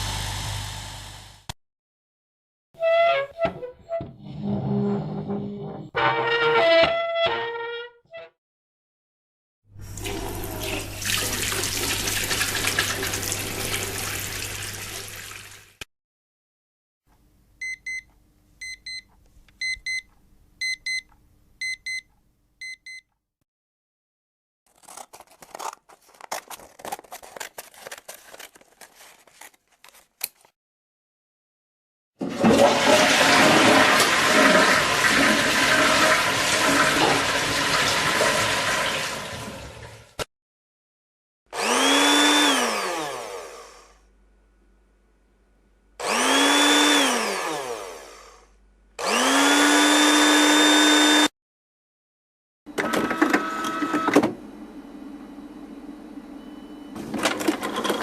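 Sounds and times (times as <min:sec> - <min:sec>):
motorised appliance whirring: 0:00.0 - 0:01.5, 0:41.6 - 0:44.0, 0:46.0 - 0:51.3, 0:52.7 - 0:54.4
toilet flushing: 0:09.8 - 0:15.8, 0:32.2 - 0:40.2.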